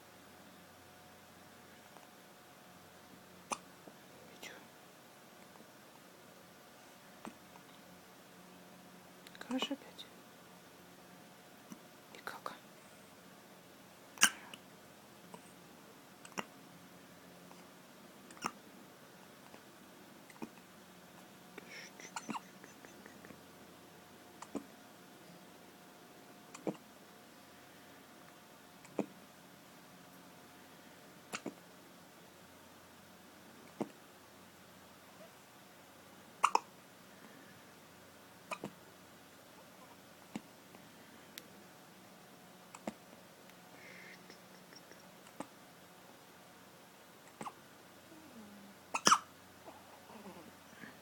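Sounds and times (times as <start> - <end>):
person hiccuping: 14.2 - 14.4, 21.7 - 23.3, 36.4 - 36.7, 48.9 - 49.3
sharp hiccups: 14.2 - 14.6, 16.2 - 16.5, 18.3 - 18.6, 22.0 - 22.8, 26.5 - 26.8, 31.3 - 31.6, 36.4 - 36.7, 38.5 - 38.7, 47.3 - 47.6, 48.9 - 49.3.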